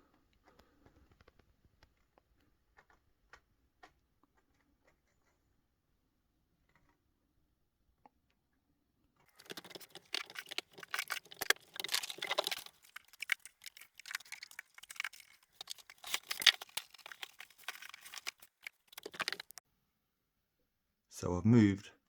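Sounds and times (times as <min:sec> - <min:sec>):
packaging rustling and crinkling: 0:09.3 - 0:19.6.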